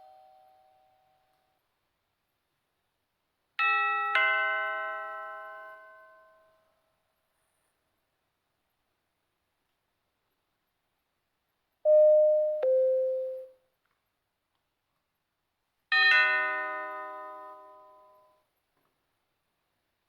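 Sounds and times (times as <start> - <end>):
doorbell ding-dong: 11.9 - 13.5
ringing multi-tone chime: 11.9 - 13.5.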